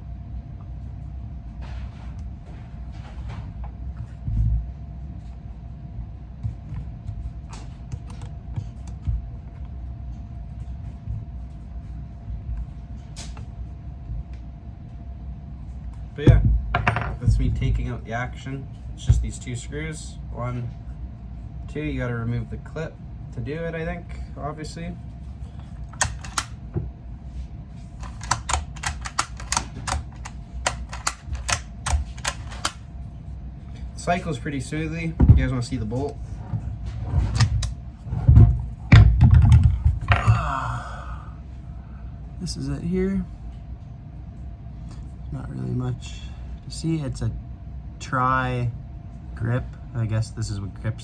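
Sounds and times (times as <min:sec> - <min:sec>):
faint hum: 0:00.0 - 0:51.0
clicks of rifle parts handled: 0:25.9 - 0:26.6, 0:28.0 - 0:32.8.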